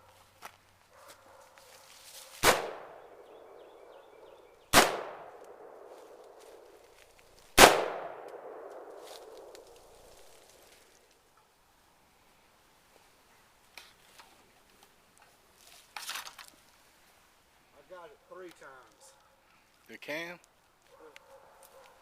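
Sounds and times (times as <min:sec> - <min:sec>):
rifle shots echoing: 0:02.4 - 0:04.0, 0:04.7 - 0:06.7, 0:07.6 - 0:10.4.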